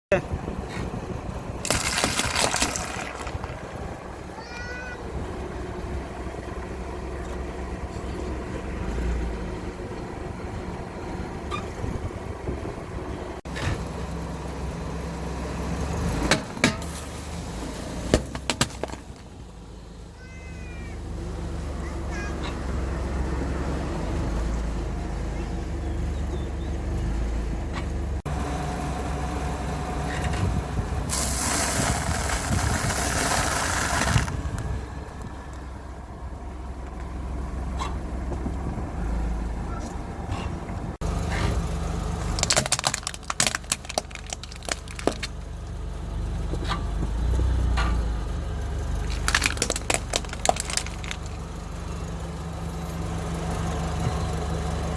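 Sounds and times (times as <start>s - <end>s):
tyres crushing crunchy objects: 1.6s - 3.8s, 31.2s - 34.7s, 42.2s - 45.4s, 49.0s - 51.4s
sharp crackling and popping: 1.6s - 4.0s, 42.2s - 45.4s, 49.0s - 51.5s.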